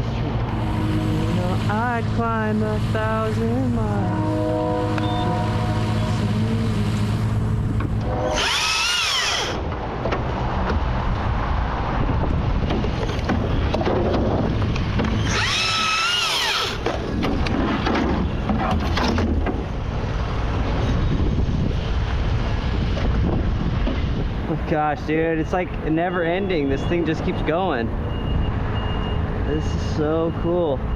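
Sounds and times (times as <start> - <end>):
rough cutting noise: 0.0 - 9.8, 14.8 - 17.2
low steady rumble: 0.0 - 12.8
chainsaw whining at full speed: 0.4 - 9.6, 15.2 - 16.8.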